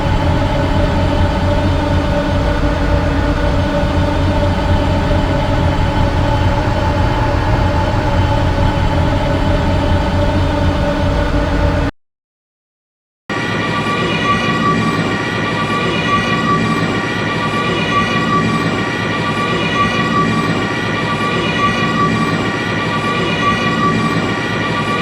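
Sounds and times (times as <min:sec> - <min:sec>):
starfighter engine drone: 0:00.0 - 0:11.9, 0:13.3 - 0:25.0.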